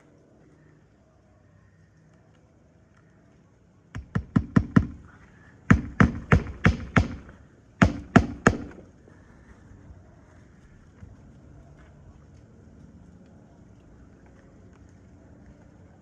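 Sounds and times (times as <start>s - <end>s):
hammer driving nails: 4.0s - 5.0s, 5.7s - 8.8s.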